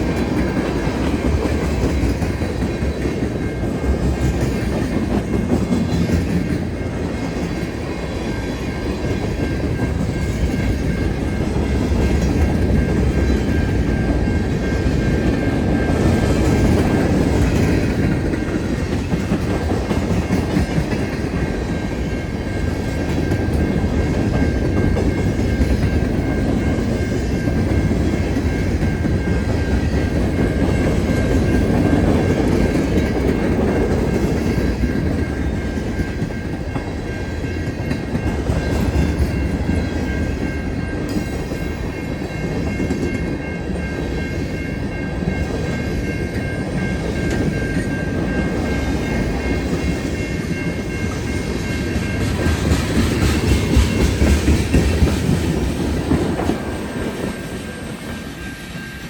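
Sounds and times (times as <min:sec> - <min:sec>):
freight train wheels clacking: 0:00.0 - 0:59.0.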